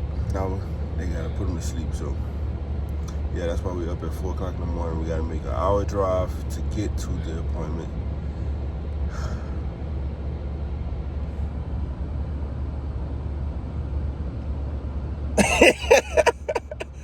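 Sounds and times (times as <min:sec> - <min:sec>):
car engine rumble: 0:00.0 - 0:17.0
person coughing: 0:15.4 - 0:16.9.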